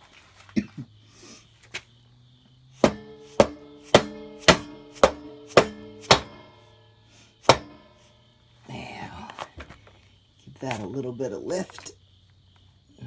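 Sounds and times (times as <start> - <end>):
mallet striking metal axle: 2.8 - 6.8, 7.4 - 8.1.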